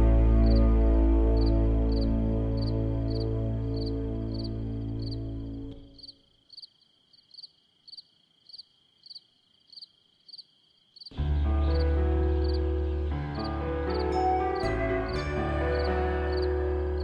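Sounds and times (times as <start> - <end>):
show music with deep bass: 0.0 - 5.8, 11.2 - 17.0
crickets chirping: 0.4 - 0.6, 1.3 - 11.2.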